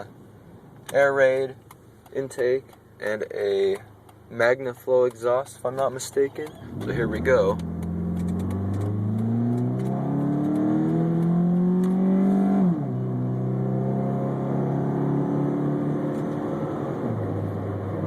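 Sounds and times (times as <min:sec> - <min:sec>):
car engine accelerating: 0:06.4 - 0:18.0.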